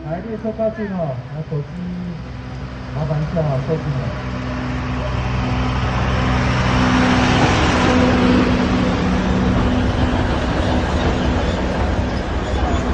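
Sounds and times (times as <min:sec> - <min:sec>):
diesel train engine humming: 0:00.0 - 0:12.9
train running noise: 0:00.0 - 0:12.9.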